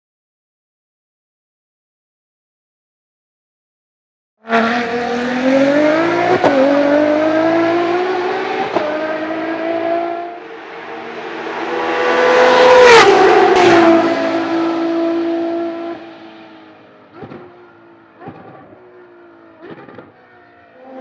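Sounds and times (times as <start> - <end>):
race car engine accelerating: 4.4 - 20.1.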